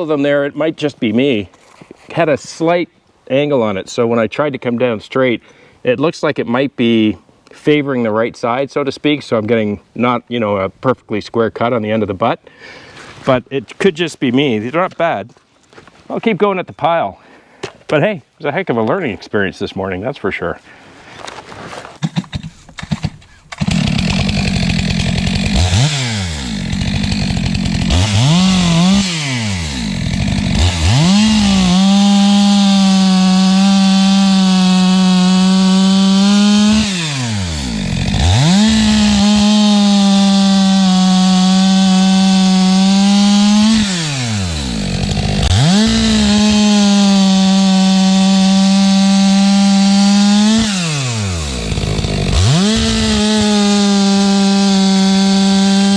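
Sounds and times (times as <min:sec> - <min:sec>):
chainsaw cutting logs: 0:21.2 - 0:55.9.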